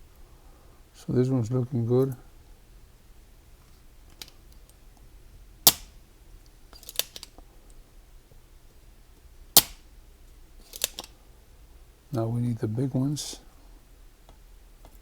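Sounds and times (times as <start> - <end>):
solder sucker snapping: 5.7 - 6.0, 9.6 - 9.8.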